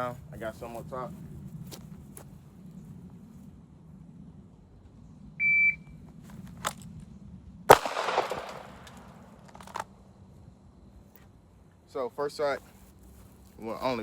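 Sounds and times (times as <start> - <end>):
shot timer beep: 5.4 - 5.8
pistol shot: 7.7 - 9.3.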